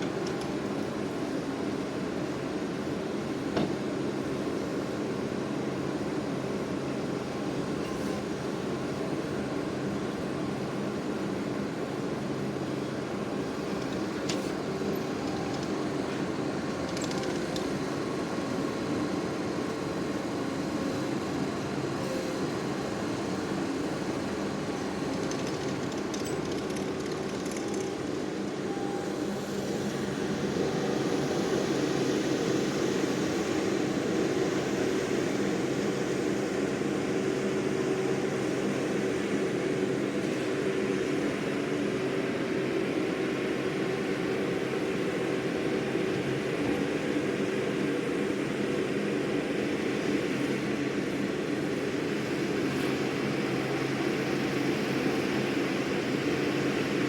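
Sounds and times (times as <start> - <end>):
loader engine running: 0.0 - 42.7.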